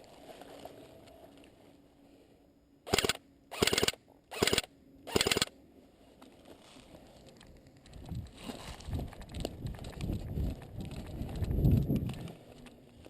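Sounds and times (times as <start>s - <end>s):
airsoft rifle full-auto bursts: 2.9s - 5.5s.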